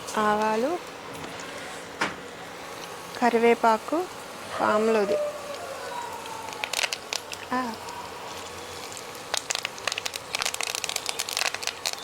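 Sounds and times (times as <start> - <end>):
steady oil sizzle: 0.0 - 12.0
leaves sputtering in oil: 1.6 - 12.0
seeds popping in hot oil: 6.2 - 12.0.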